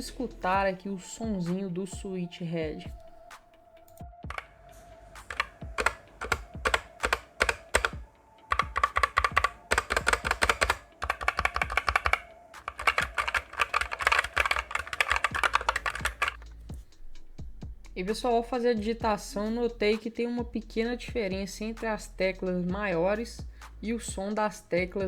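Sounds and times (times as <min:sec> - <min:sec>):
mechanical keyboard key clacks: 0:05.2 - 0:16.4.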